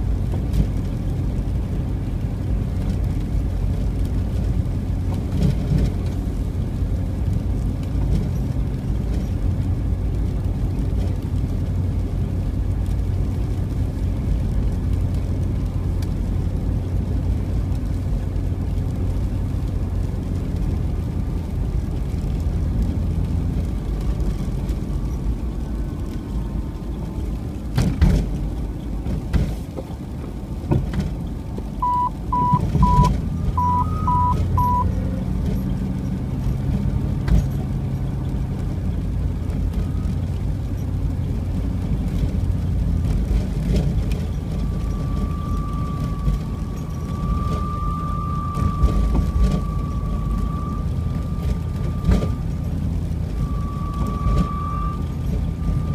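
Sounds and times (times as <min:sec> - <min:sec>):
car road and engine rumble: 0:00.0 - 0:55.9
short beeps: 0:31.8 - 0:34.9, 0:44.6 - 0:52.4, 0:53.4 - 0:55.9.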